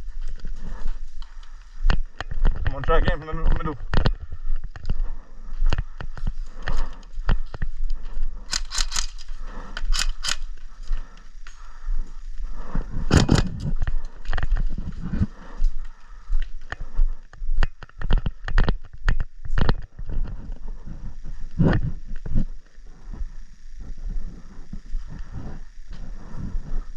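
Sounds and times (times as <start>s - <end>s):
low steady rumble: 0.0s - 17.6s, 18.3s - 26.9s.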